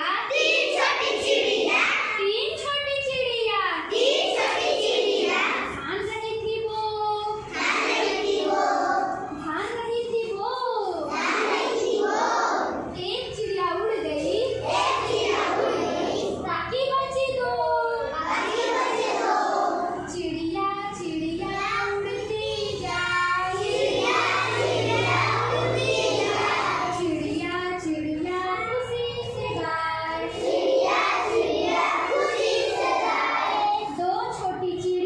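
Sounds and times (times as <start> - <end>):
children singing: 0.3 - 2.2, 3.9 - 5.8, 7.4 - 9.4, 11.1 - 12.9, 14.5 - 16.5, 18.1 - 20.1, 21.4 - 27.3, 29.2 - 34.0.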